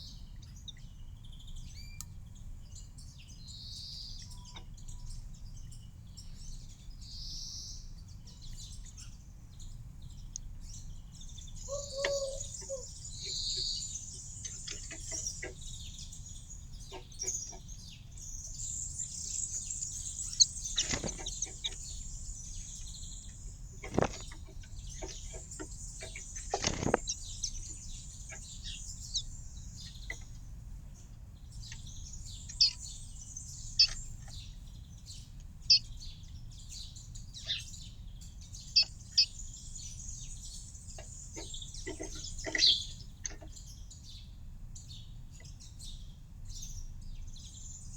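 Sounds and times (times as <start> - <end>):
songbirds chirping and twittering: 0.0 - 47.9
low bird call: 11.6 - 13.8.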